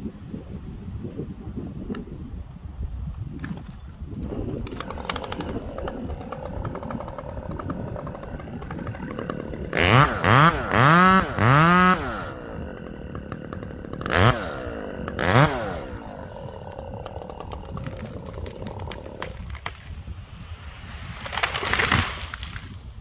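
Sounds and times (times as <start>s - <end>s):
chainsaw idling and revving: 4.2s - 19.9s, 21.0s - 22.6s.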